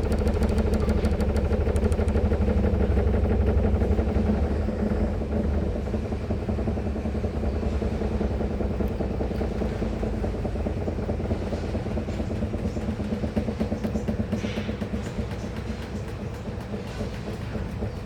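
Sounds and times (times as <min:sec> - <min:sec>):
washing machine drum spinning: 0:00.0 - 0:18.0.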